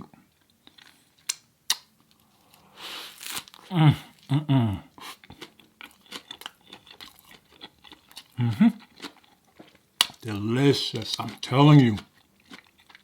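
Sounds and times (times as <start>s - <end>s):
person humming mm: 3.7s - 4.9s
chewing with wet mouth clicks: 5.0s - 10.3s, 11.0s - 13.0s.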